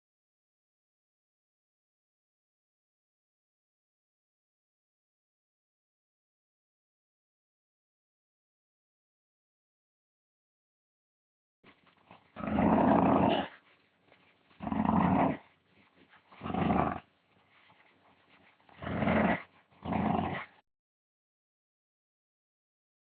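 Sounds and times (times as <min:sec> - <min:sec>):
dog growling: 0:12.1 - 0:13.6, 0:14.6 - 0:15.5, 0:16.3 - 0:17.1, 0:18.7 - 0:20.6.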